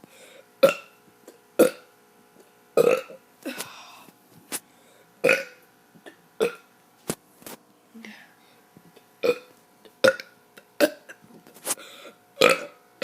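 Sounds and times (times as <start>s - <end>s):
child burping: 0.6s - 1.9s, 2.8s - 3.2s, 5.2s - 6.6s, 9.2s - 11.2s, 12.0s - 12.8s.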